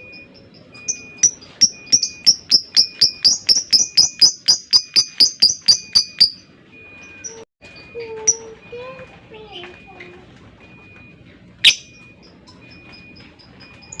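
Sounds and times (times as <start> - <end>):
bird chattering high chirps: 0.9 - 6.4, 11.6 - 12.0.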